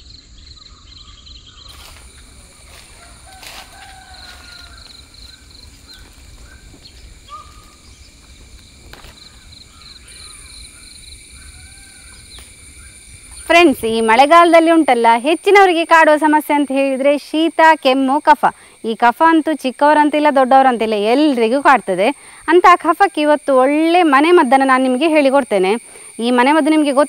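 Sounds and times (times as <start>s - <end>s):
rhythmic insect trill: 0.0s - 27.0s
birds chirping and whistling: 4.5s - 8.3s.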